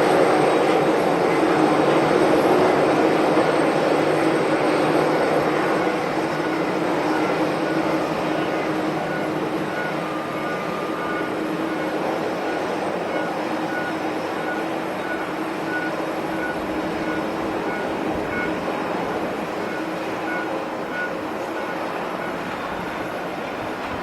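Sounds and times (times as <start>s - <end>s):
jet engines roaring: 0.0s - 24.0s
faint short beeps: 6.4s - 23.1s.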